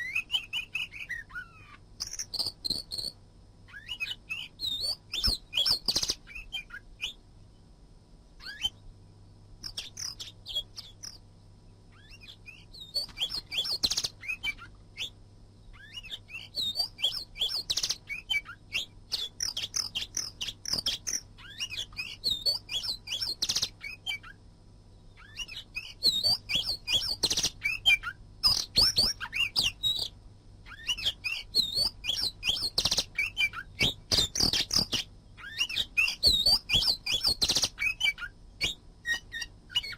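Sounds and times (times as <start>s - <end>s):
bird singing chirps and whistles: 0.0s - 7.2s, 8.4s - 8.8s, 9.6s - 11.2s, 11.9s - 24.4s, 25.1s - 39.9s.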